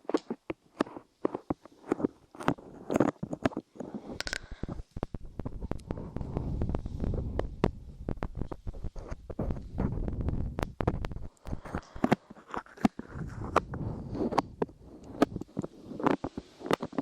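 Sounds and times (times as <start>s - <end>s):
sticky crackling clicks: 0.0s - 17.0s
muffled low rustle: 4.6s - 12.3s.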